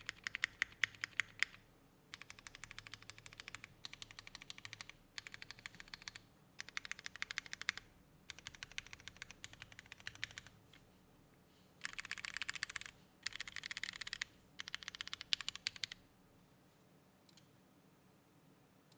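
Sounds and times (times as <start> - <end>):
mechanical keyboard typing: 0.0 - 10.5, 11.8 - 16.0.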